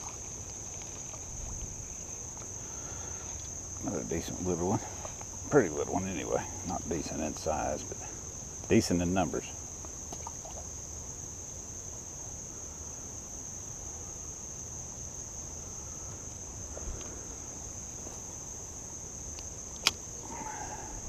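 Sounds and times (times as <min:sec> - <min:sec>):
insects trilling: 0:00.0 - 0:21.0
sharp click: 0:19.4 - 0:20.0.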